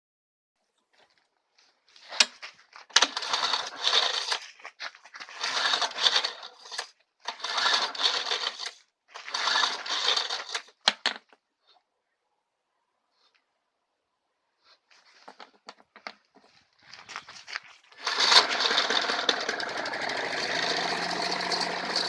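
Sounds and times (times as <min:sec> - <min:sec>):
lawn mower engine turning over: 0:02.0 - 0:11.2, 0:16.9 - 0:22.0
recoil starter pulls: 0:02.9 - 0:04.5, 0:05.2 - 0:11.0, 0:17.9 - 0:22.0.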